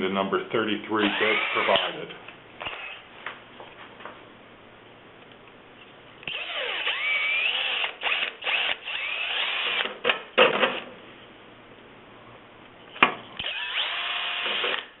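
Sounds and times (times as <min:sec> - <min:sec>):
electric drill drilling: 0:01.0 - 0:02.0, 0:02.6 - 0:03.0, 0:06.3 - 0:10.0, 0:13.4 - 0:15.0.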